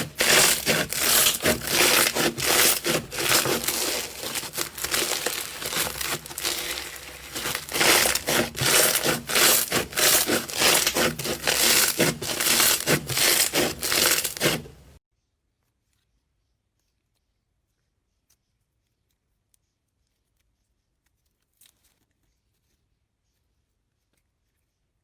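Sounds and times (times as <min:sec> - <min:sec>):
slime crunchy crackling: 0:00.0 - 0:14.8.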